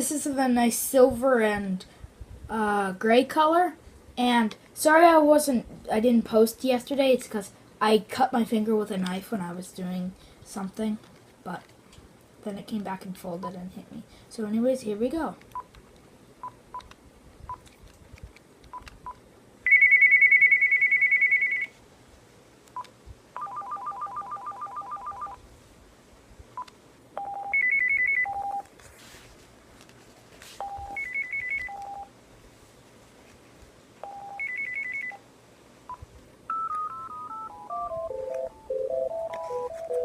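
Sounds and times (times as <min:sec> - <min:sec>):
cordless phone ringtones: 0:19.7 - 0:21.7, 0:23.4 - 0:25.4, 0:27.2 - 0:28.7, 0:30.6 - 0:32.1, 0:34.0 - 0:35.2, 0:36.5 - 0:40.0.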